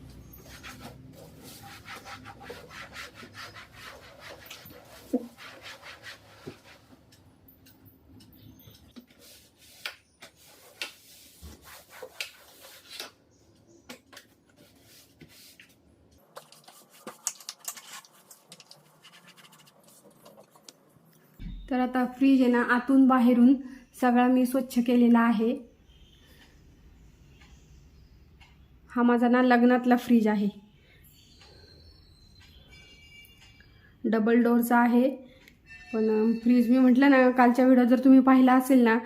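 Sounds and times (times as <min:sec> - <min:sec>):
soapy scrubbing on refrigerator: 0:00.4 - 0:06.9, 0:09.2 - 0:13.0, 0:16.4 - 0:20.7.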